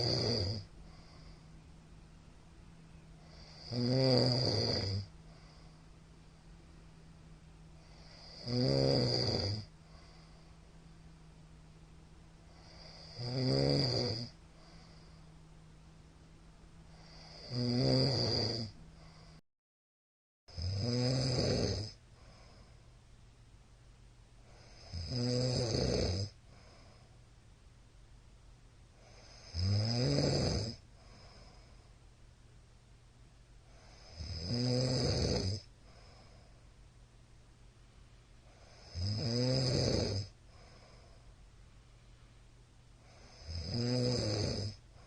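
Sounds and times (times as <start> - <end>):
man snoring loudly: 0.0 - 1.3, 3.2 - 5.6, 7.8 - 10.2, 12.5 - 15.0, 16.9 - 18.8, 20.5 - 22.0, 24.6 - 26.4, 29.0 - 30.8, 33.8 - 35.7, 38.6 - 40.4, 43.0 - 44.8
faint steady hum: 0.0 - 19.4, 20.5 - 45.0.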